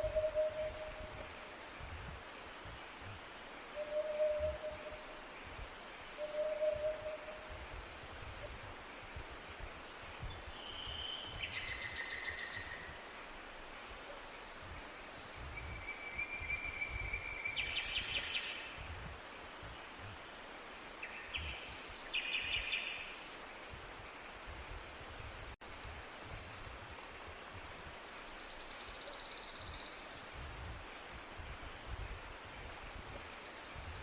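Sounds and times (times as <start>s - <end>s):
songbird singing: 0.0s - 8.6s, 9.8s - 13.2s, 13.9s - 23.4s, 27.7s - 30.6s, 31.9s - 34.0s
low rumble of wind: 0.0s - 34.0s.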